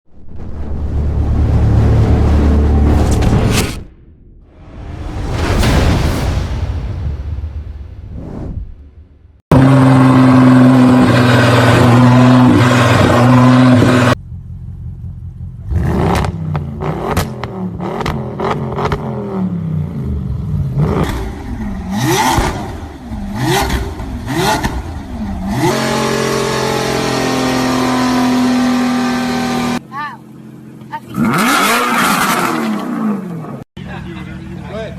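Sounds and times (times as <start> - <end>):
exhaust cracks: 0.2 - 7.5, 20.3 - 28.5
car engine steady high note: 9.5 - 15.9
car engine revving: 9.5 - 29.8, 30.5 - 34.6.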